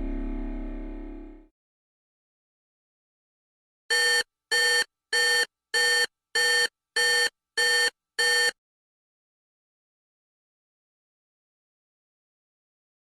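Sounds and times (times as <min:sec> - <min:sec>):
electronic alarm beeping: 0:03.9 - 0:08.6.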